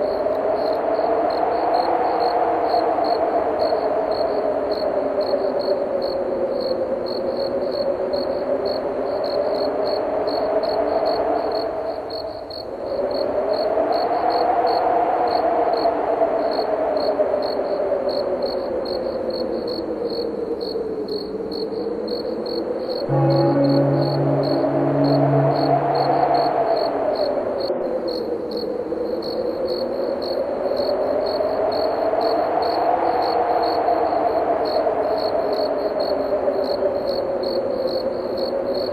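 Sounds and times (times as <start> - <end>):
crickets chirping: 0.0 - 38.9
low church bell strike: 23.1 - 26.8
wind moaning: 23.1 - 29.0.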